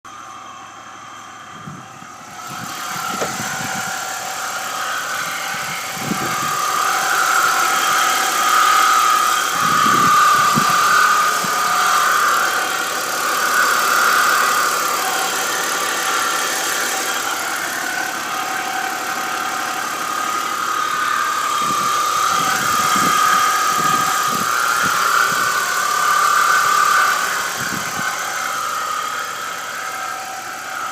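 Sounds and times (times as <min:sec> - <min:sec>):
car engine running: 0:00.1 - 0:30.9
high-pitched wavering whine: 0:00.1 - 0:30.9.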